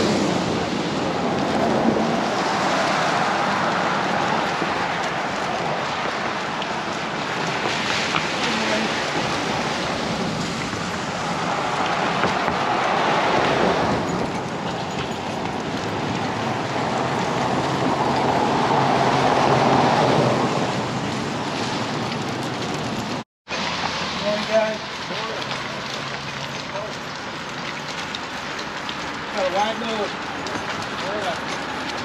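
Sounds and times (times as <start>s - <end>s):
rain falling: 0.0s - 32.0s.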